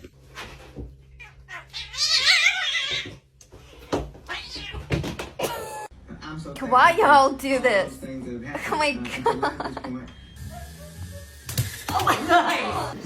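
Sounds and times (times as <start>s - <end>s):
cat yowling: 1.2s - 3.1s.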